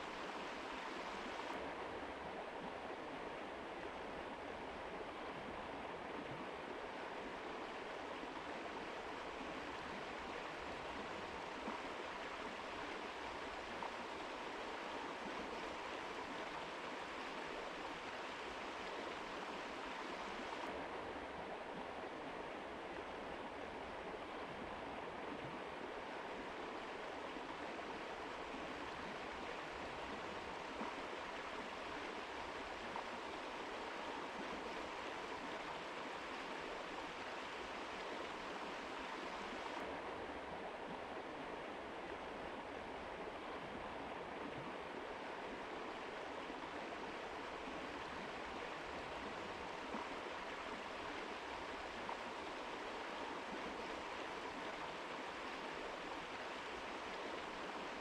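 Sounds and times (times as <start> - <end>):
river rushing over rocks: 41.6 - 58.0.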